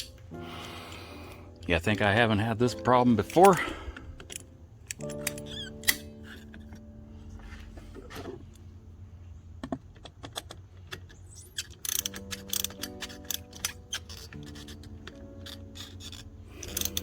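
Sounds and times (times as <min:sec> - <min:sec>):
soft piano music: 0:00.0 - 0:10.0, 0:11.2 - 0:17.0
hand tools clicking on metal: 0:03.2 - 0:06.6, 0:09.6 - 0:17.0.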